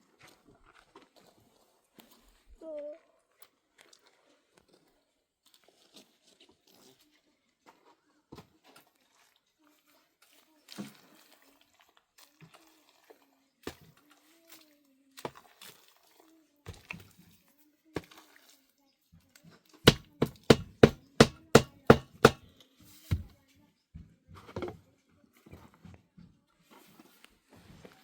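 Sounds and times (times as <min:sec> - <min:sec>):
hard sharp knocks: 0:19.9 - 0:22.4.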